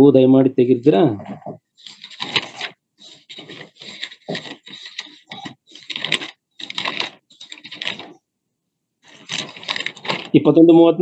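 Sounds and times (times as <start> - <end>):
book pages rustling: 1.4 - 8.2, 9.0 - 10.4.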